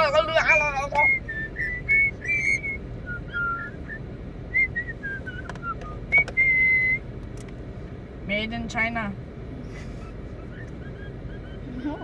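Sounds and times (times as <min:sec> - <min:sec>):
parrot whistling: 0:01.0 - 0:04.0, 0:04.6 - 0:07.0, 0:10.4 - 0:12.0.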